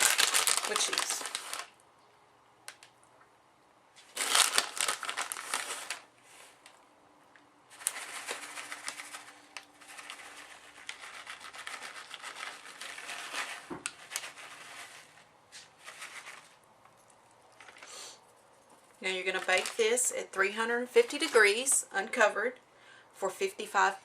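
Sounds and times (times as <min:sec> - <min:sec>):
plastic crinkling and rustling: 0:00.0 - 0:01.8, 0:04.0 - 0:06.8, 0:07.7 - 0:17.9, 0:19.0 - 0:20.1.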